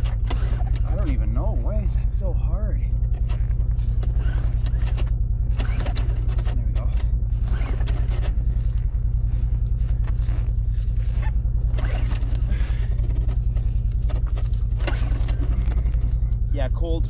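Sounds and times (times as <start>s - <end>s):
engine running: 0.0s - 17.0s
scraping handling noises: 3.0s - 16.4s.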